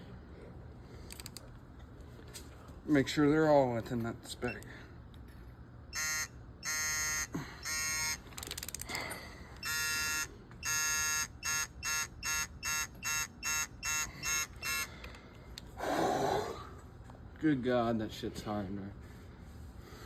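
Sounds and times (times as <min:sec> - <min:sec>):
rattle of clicks: 0:01.1 - 0:01.6, 0:08.3 - 0:09.1
torque wrench beeping: 0:05.9 - 0:09.0, 0:09.6 - 0:15.1.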